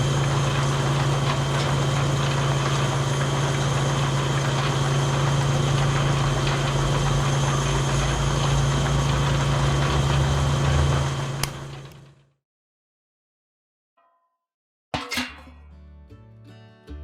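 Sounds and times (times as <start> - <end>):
engine idling: 0.0 - 11.8
click: 11.4 - 12.0.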